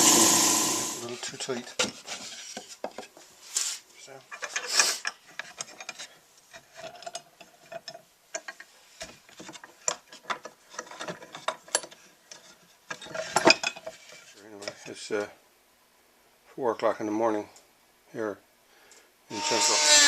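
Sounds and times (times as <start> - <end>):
wooden parts clicking and knocking: 4.3 - 14.0.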